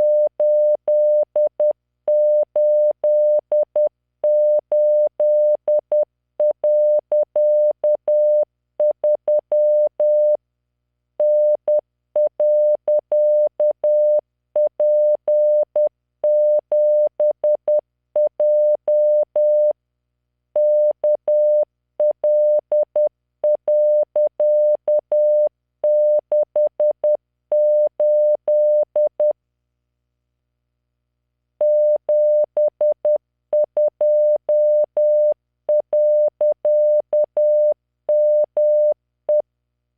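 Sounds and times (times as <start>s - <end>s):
morse code beeps: 31.6s - 39.4s.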